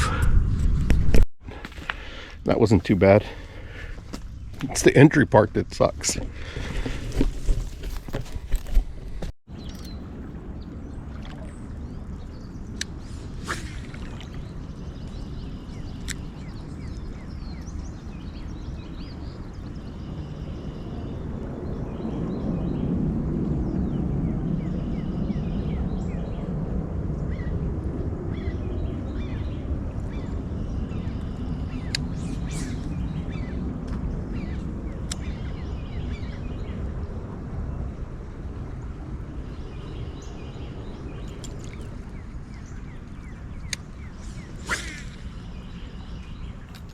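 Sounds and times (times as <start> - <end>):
steady low rumble: 0.0 - 46.9
handling noise rustling and clicking: 6.6 - 9.9, 46.6 - 46.9
small birds chirping: 11.4 - 21.2, 39.4 - 46.9.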